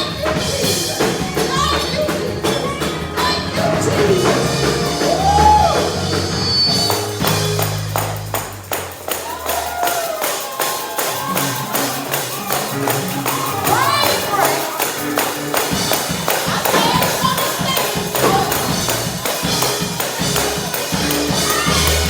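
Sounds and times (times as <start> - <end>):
bass line: 0.0 - 9.8, 15.4 - 22.0
fast percussion beat: 0.0 - 22.0
upbeat gospel praise music: 0.0 - 22.0.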